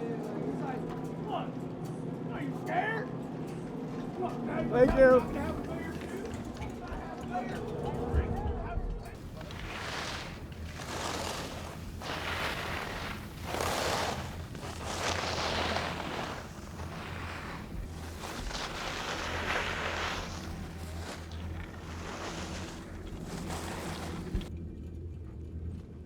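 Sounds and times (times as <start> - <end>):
skis carving on snow: 4.9 - 6.4, 9.2 - 24.5.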